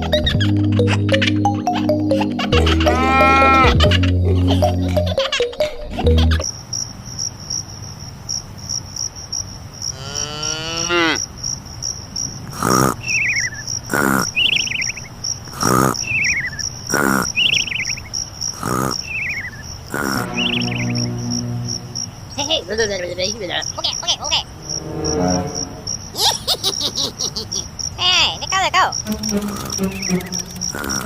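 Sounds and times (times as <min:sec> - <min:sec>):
high-pitched chirping: 0:18.6 - 0:22.4, 0:29.0 - 0:31.0
falling glide: 0:19.9 - 0:22.4, 0:24.3 - 0:26.3.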